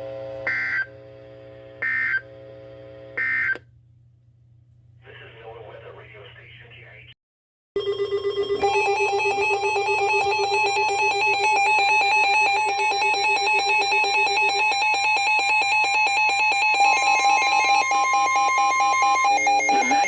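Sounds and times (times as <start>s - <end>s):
emergency alert tone: 7.8s - 20.0s
steady higher electronic tone: 8.6s - 20.0s.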